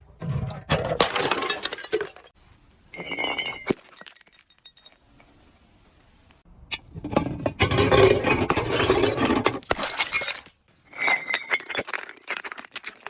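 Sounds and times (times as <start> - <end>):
glass bottles breaking: 0.8 - 5.1, 7.6 - 13.0
small glass pieces tinkling: 3.0 - 5.1, 9.6 - 13.0.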